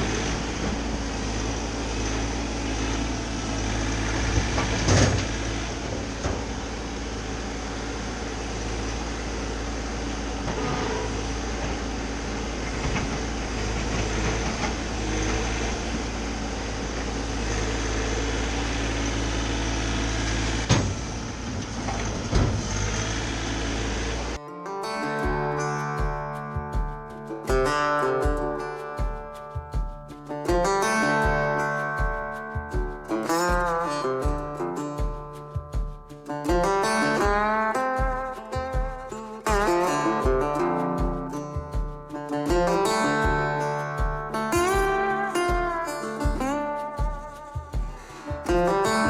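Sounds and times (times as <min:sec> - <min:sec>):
diesel engine running: 0:00.0 - 0:24.4, 0:25.2 - 0:49.0
sharp knocks: 0:20.6 - 0:21.2, 0:25.2 - 0:49.0.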